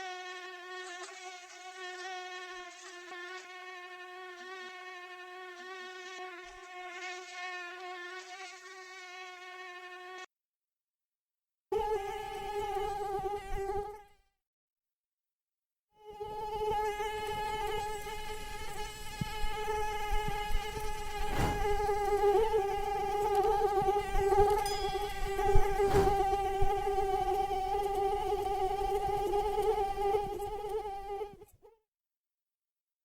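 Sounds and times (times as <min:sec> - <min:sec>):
mosquito whine: 0:16.0 - 0:31.5.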